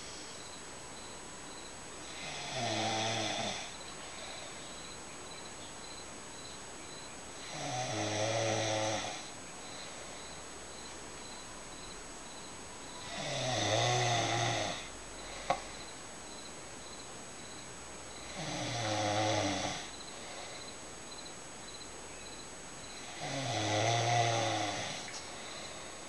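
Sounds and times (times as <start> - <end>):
woman snoring: 2.0 - 4.4, 7.4 - 9.3, 13.0 - 15.6, 18.2 - 20.7, 23.0 - 26.0.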